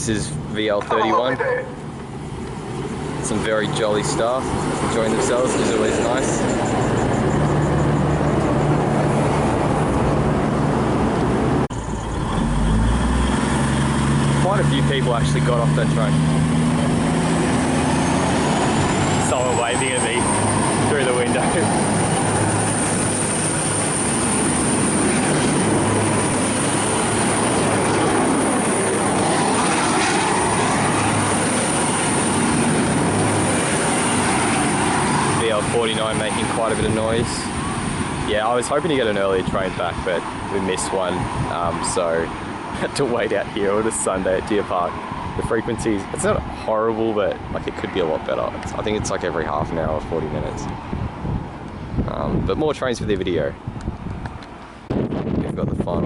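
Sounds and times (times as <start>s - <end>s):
diesel railcar engine droning: 0.2s - 41.4s.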